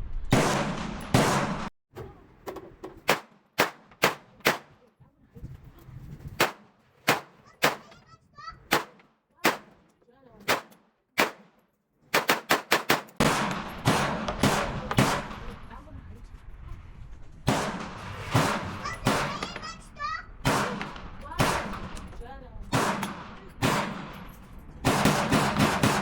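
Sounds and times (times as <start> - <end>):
gunshots: 0.0 - 1.7, 3.0 - 4.8, 6.4 - 8.0, 8.6 - 9.8, 10.4 - 15.8, 17.4 - 26.0.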